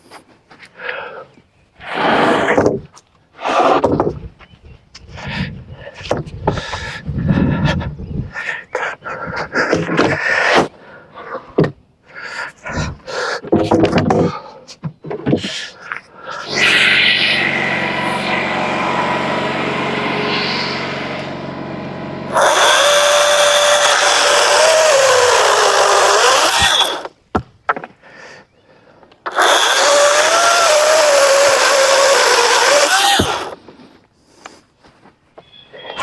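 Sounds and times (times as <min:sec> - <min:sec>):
small engine running: 0:16.4 - 0:27.1, 0:29.3 - 0:33.6
power tool whine: 0:16.4 - 0:27.2, 0:29.3 - 0:33.6.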